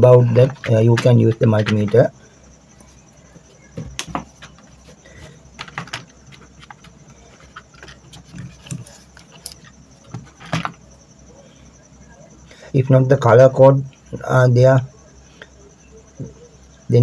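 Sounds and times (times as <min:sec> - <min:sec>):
clicks of hands handling wires: 0:00.4 - 0:02.1, 0:03.8 - 0:10.8.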